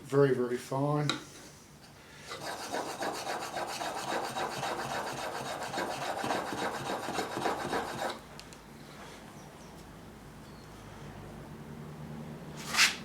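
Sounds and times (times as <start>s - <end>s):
chisel rasping on sharpening stone: 2.3s - 8.2s.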